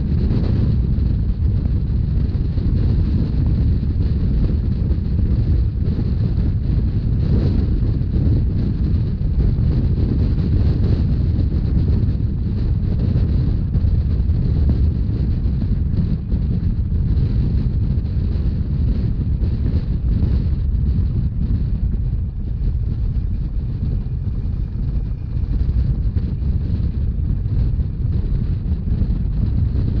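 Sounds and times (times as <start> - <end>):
train rumbling: 0.0 - 30.0
wind buffeting microphone: 0.0 - 30.0.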